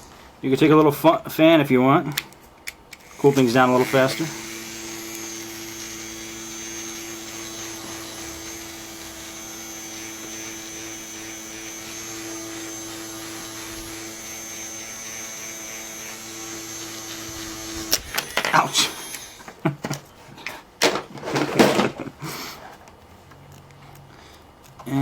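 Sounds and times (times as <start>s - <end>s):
small electric fan humming: 2.2s - 20.5s.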